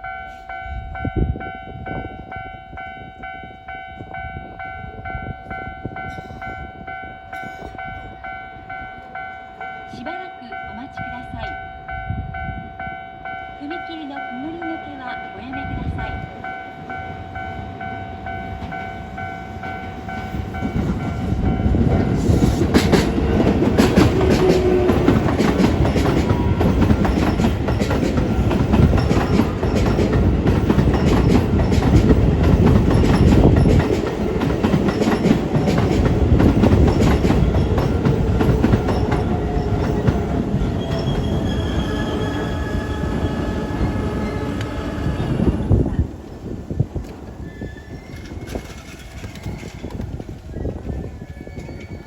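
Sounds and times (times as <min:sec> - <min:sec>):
level-crossing warning bell: 0:00.0 - 0:45.8
train wheels clacking over rail joints: 0:19.6 - 0:45.4, 0:48.1 - 0:50.5.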